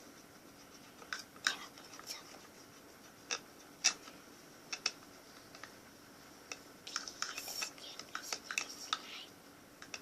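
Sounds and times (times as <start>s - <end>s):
utensils clicking and tapping: 6.5s - 9.1s.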